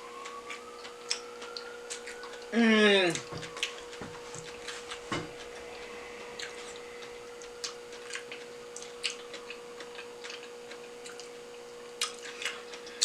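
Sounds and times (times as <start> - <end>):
faint steady hum: 0.0 - 13.0
wet mouth clicks and chewing: 0.2 - 2.5, 8.1 - 11.4, 12.0 - 13.0.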